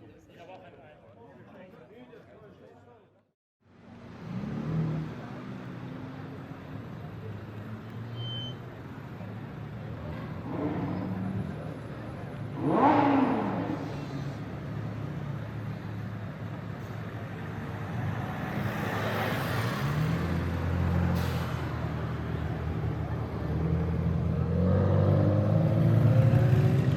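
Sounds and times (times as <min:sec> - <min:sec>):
engine revving: 0:04.1 - 0:06.1, 0:10.1 - 0:11.8, 0:12.4 - 0:14.6, 0:18.3 - 0:26.9
vehicle passing by: 0:16.9 - 0:26.9.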